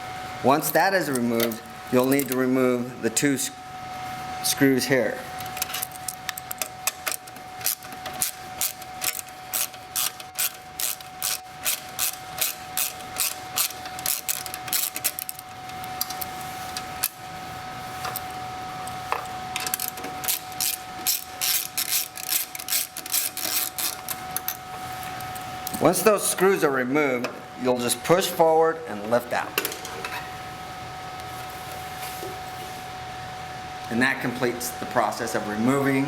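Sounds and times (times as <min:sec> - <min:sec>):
faint high hum: 0:00.0 - 0:36.0.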